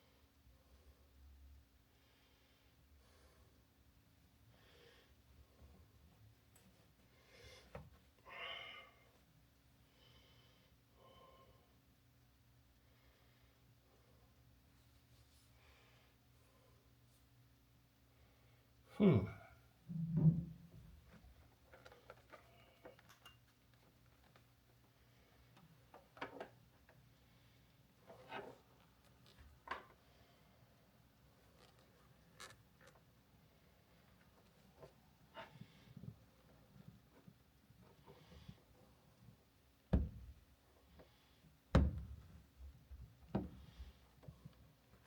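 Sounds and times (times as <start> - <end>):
knocks: 39.9 - 40.3.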